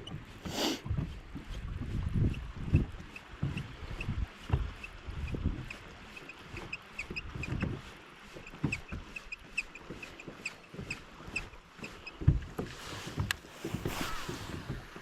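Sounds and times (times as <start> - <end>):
water slapping against boat hull: 0.0 - 15.0
wind buffeting microphone: 0.8 - 5.7.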